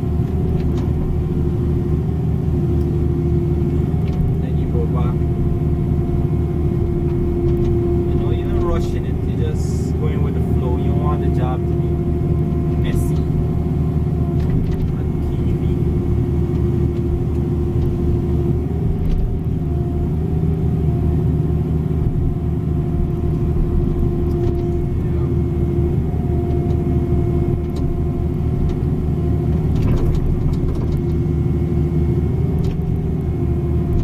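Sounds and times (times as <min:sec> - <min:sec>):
excavator diesel engine: 0:00.0 - 0:34.0.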